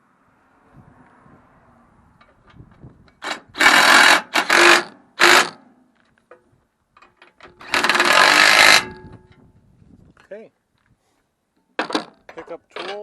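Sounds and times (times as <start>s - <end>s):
power driver running: 7.6s - 8.8s.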